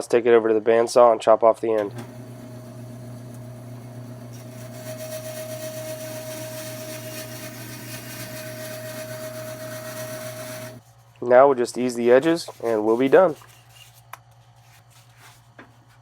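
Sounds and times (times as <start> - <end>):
bandsaw hum and whine: 1.8 - 10.8
sawing hiss: 1.9 - 10.8.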